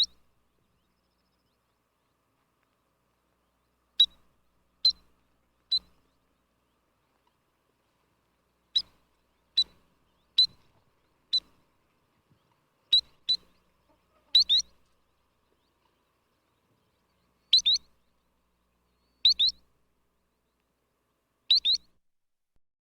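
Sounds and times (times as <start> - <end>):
sandpiper calls: 0.0 - 0.3, 3.6 - 6.4, 8.6 - 11.7, 12.3 - 16.1, 17.0 - 19.7, 21.5 - 21.9.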